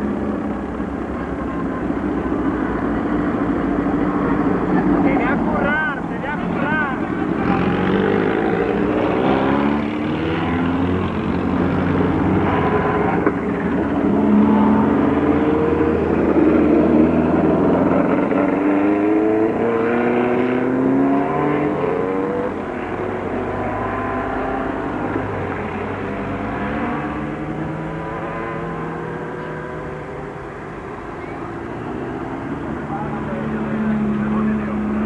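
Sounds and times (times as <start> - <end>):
racing car engine accelerating: 0.0 - 35.0.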